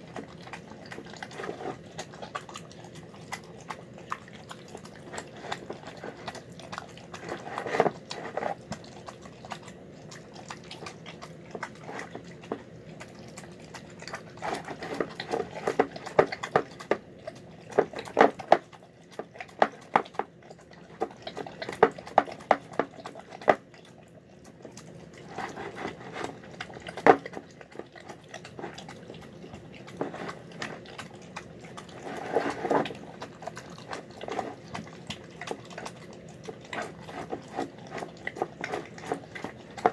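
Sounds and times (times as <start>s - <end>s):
dog chewing and smacking: 0.0s - 39.9s.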